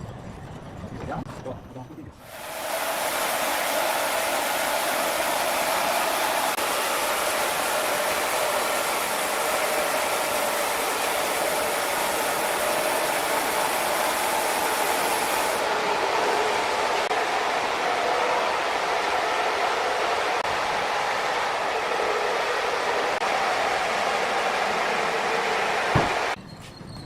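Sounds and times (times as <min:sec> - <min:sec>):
saw cutting through timber: 0:02.2 - 0:26.4.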